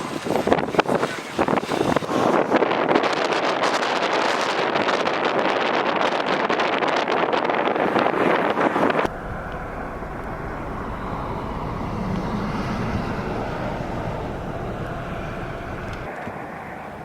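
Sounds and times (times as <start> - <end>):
wind buffeting microphone: 0.0 - 17.0
vehicle engine rumble: 8.5 - 17.0.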